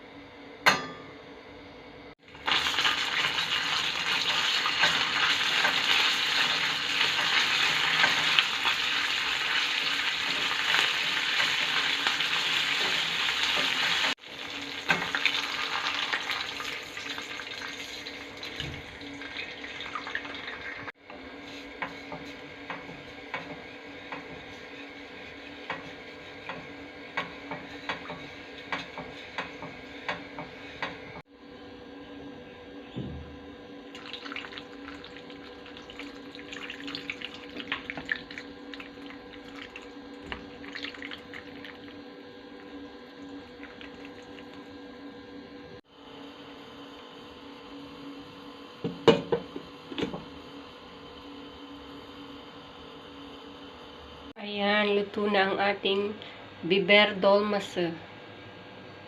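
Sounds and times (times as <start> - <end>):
sauce sizzling in a pan: 2.3 - 18.2.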